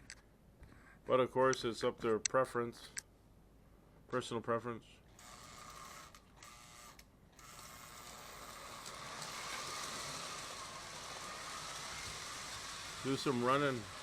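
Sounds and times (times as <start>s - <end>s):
toy train motor whirring: 5.1s - 14.0s.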